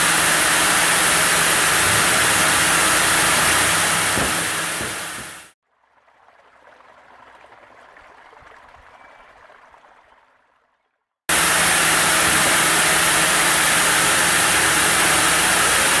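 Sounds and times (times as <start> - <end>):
sawmill saw running: 0.0 - 5.5, 11.3 - 16.0.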